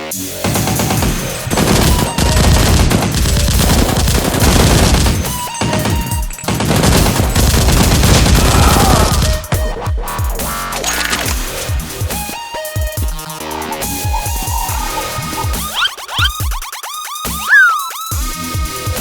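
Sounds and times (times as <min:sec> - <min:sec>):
rapid automatic gunfire: 0:00.4 - 0:09.4.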